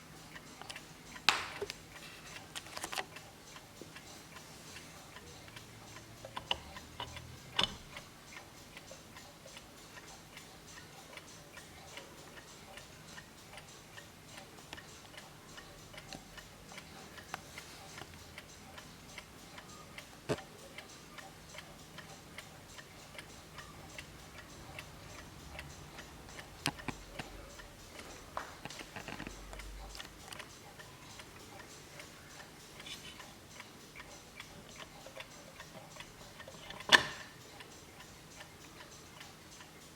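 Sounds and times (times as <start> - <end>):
wall clock ticking: 0.0 - 39.9
louder clock clicks: 36.6 - 37.4.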